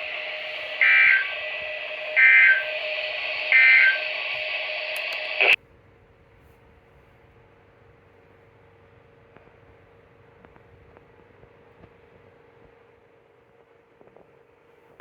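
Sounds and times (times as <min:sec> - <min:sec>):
radio hiss: 0:00.0 - 0:05.6
two-tone digital warbles: 0:00.0 - 0:05.6
faint hum: 0:00.0 - 0:15.0
click: 0:00.8 - 0:05.6.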